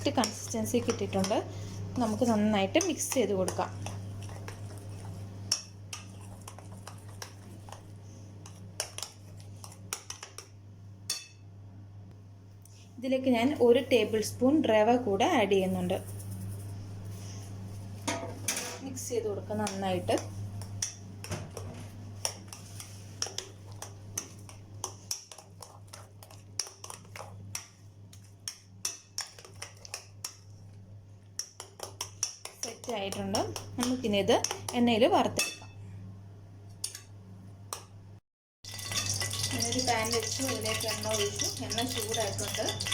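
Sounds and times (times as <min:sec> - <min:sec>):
steady low hum: 0:00.0 - 0:38.2
spoon scraping a bowl: 0:02.0 - 0:10.2.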